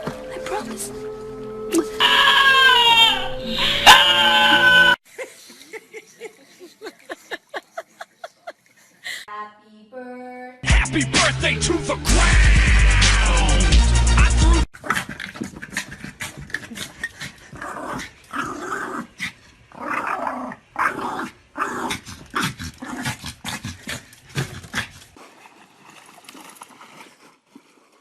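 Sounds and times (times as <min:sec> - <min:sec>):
dog growling: 0:14.8 - 0:25.1.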